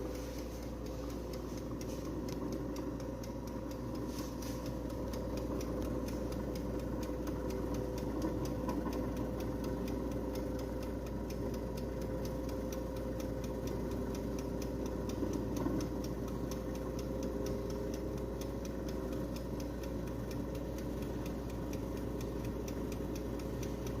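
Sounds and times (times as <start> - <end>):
air fryer humming: 0.0 - 24.0
fast regular ticking: 0.0 - 24.0.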